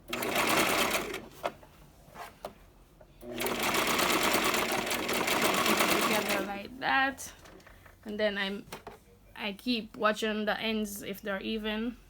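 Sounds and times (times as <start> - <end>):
sewing machine stitching: 0.0 - 1.5, 3.2 - 6.5.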